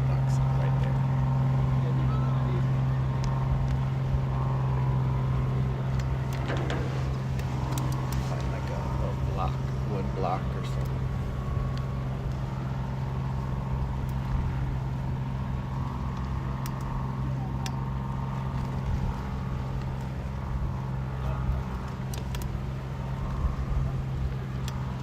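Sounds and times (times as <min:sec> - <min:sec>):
low mechanical hum: 0:00.0 - 0:25.0
wind on microphone: 0:00.0 - 0:25.0
faint clicks: 0:16.1 - 0:17.0, 0:21.4 - 0:22.6.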